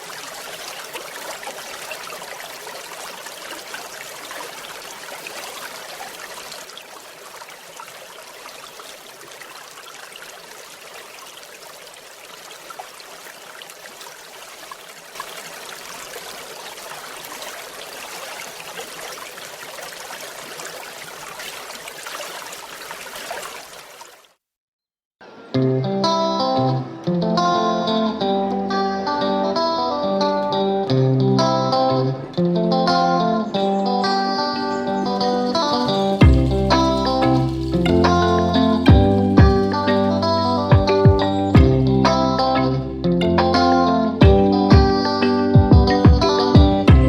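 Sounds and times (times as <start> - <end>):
water flowing over stones: 0.0 - 24.4, 34.2 - 42.4.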